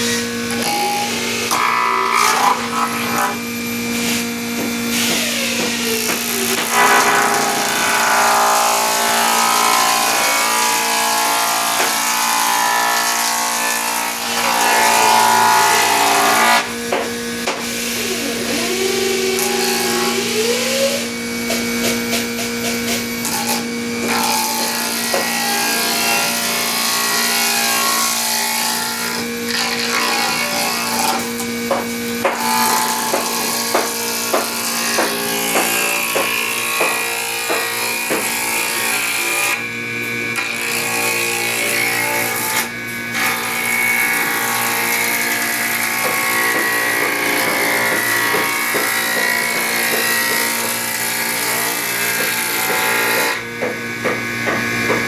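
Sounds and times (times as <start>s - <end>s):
electric planer motor hum: 0.0s - 55.0s
planer cutting wood: 0.0s - 55.0s.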